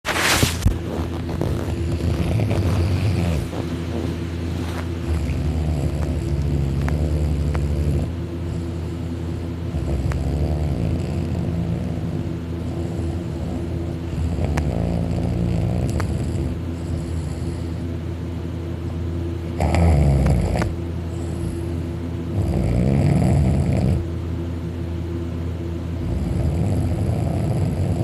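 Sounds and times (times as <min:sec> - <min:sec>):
man snoring loudly: 0:01.5 - 0:04.2, 0:05.0 - 0:08.8, 0:09.7 - 0:17.7, 0:19.6 - 0:20.7, 0:22.3 - 0:24.0, 0:26.0 - 0:28.0.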